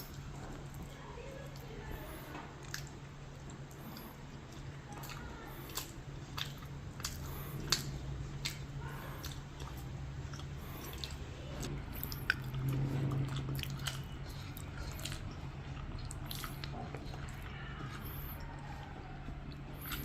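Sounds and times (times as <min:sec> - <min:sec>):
chewing and biting food: 0:00.0 - 0:20.0
steady low hum: 0:00.0 - 0:20.0
wet mouth clicks and smacks: 0:02.6 - 0:17.3.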